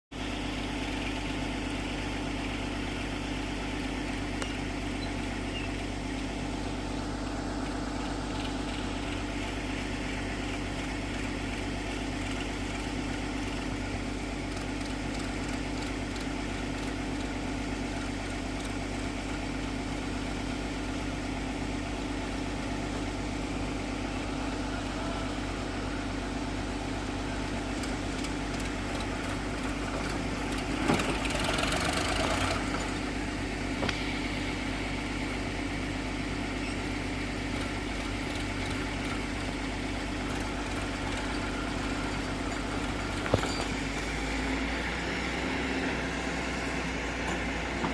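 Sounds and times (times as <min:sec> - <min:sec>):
excavator diesel engine running: 0:00.1 - 0:47.9.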